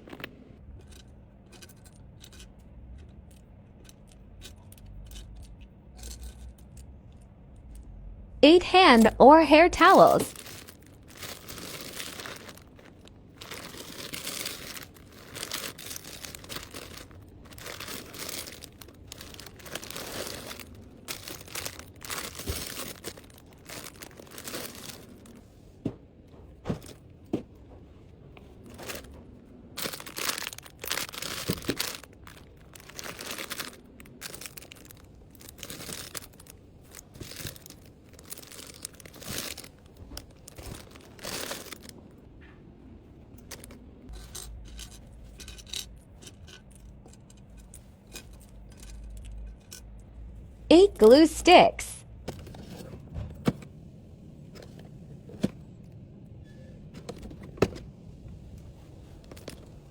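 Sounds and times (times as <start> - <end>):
packaging crinkling: 9.9 - 25.4, 29.8 - 42.0.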